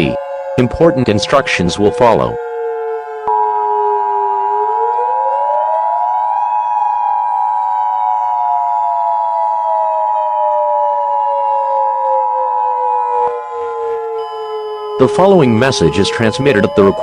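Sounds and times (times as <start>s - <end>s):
civil defense siren winding: 0.0s - 17.0s
two-tone alert signal: 14.2s - 17.0s.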